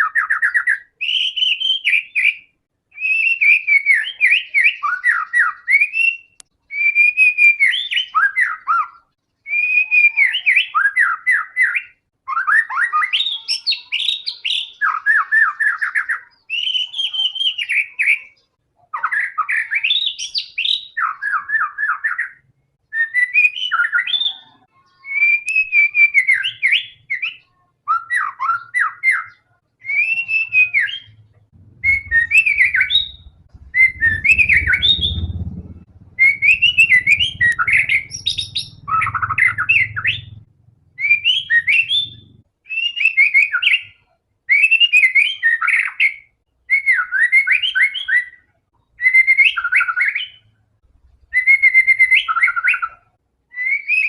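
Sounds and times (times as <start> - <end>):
songbird whistling varied phrases: 0.0 - 18.4, 25.0 - 40.4, 41.0 - 48.4, 51.3 - 54.0
low rumble: 31.0 - 42.4.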